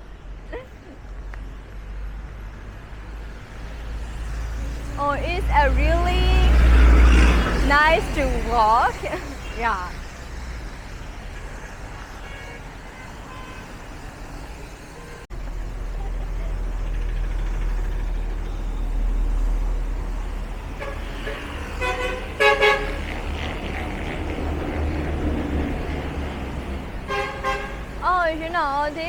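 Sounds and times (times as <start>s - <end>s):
street traffic rumbling: 0.0s - 29.0s
vehicle horn honks: 12.1s - 13.7s, 20.8s - 23.1s, 27.0s - 27.9s.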